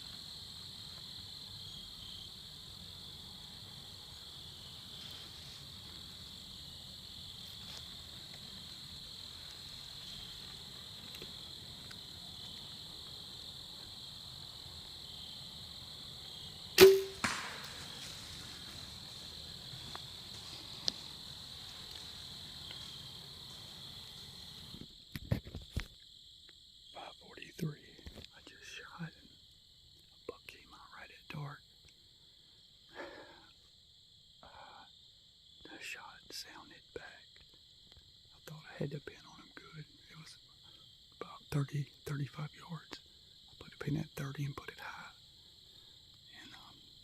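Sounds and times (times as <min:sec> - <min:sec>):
crickets and insects chirping: 0:00.0 - 0:47.0
bow shot crack: 0:16.7 - 0:19.5.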